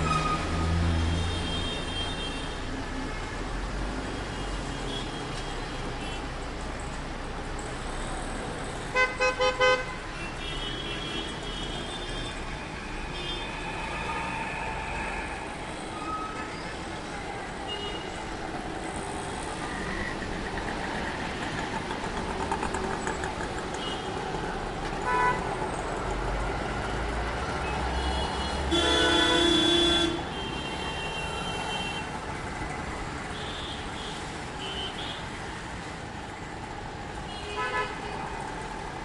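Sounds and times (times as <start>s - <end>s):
traffic noise: 0.0s - 39.0s
vehicle horn: 28.0s - 32.1s, 37.3s - 38.1s.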